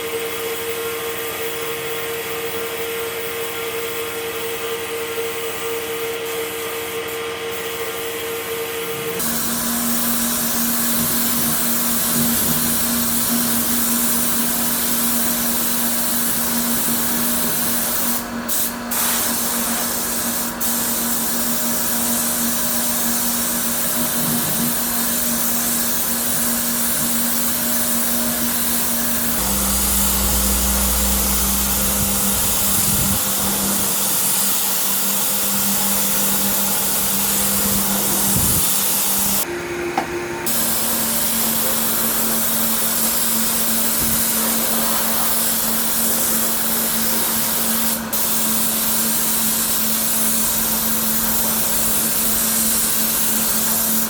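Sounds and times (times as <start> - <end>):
power tools running: 8.2 - 39.5.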